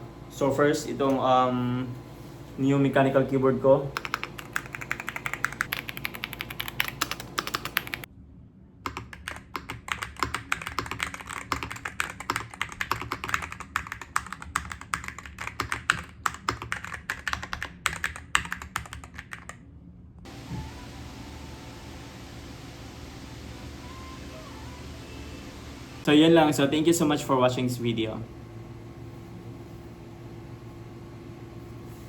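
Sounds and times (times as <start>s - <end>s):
rapid keyboard typing: 3.9s - 8.1s, 8.9s - 19.6s.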